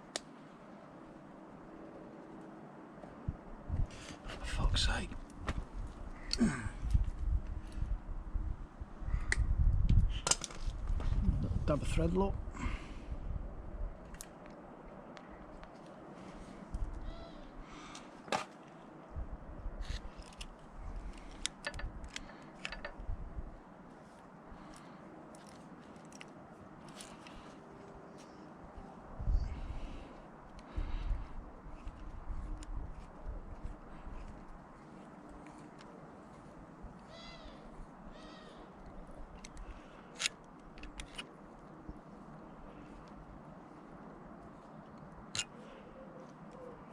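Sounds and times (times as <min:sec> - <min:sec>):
metal tools ticking on metal: 0:21.6 - 0:23.0
high-pitched animal calls: 0:37.1 - 0:38.7.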